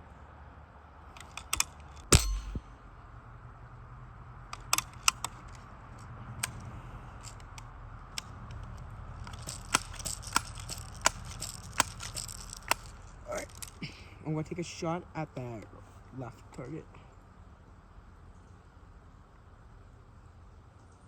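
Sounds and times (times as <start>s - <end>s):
metallic clicks and rattles: 1.1s - 2.7s, 4.5s - 13.8s
air rifle shot: 2.1s - 2.8s.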